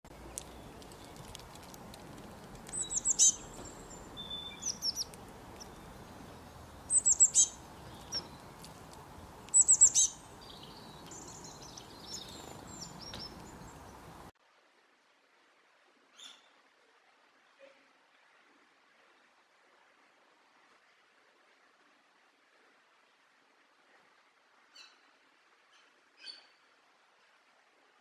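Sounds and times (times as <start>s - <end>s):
small birds singing: 0.1s - 14.3s.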